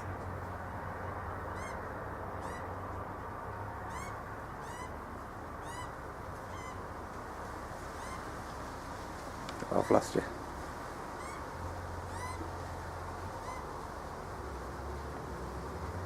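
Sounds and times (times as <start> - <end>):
young bird begging calls: 1.4 - 2.8, 3.8 - 5.0, 5.6 - 6.9, 7.9 - 8.3, 9.6 - 10.3, 11.1 - 12.6, 13.2 - 13.8.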